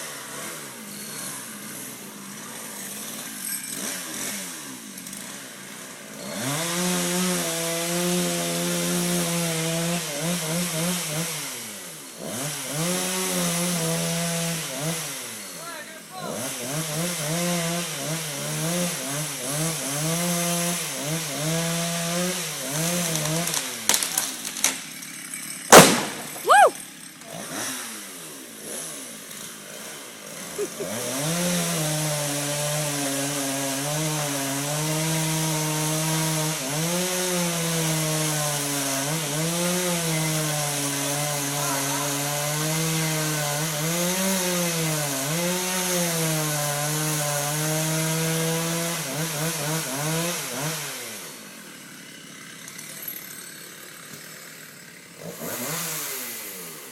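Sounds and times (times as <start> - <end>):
chainsaw cutting wood: 0.0 - 56.9
loud sharp crack: 25.7 - 26.5.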